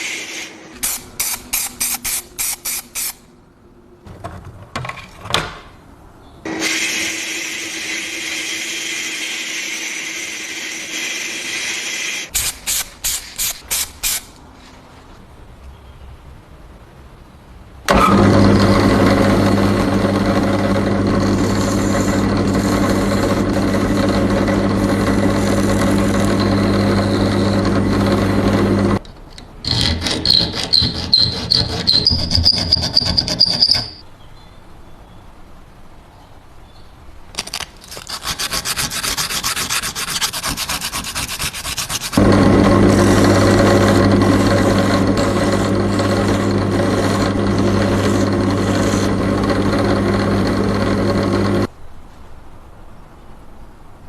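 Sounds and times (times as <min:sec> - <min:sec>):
power tool running: 0:06.5 - 0:12.4, 0:17.9 - 0:29.0, 0:42.1 - 0:51.7
rhythmic sanding strokes: 0:37.8 - 0:49.5.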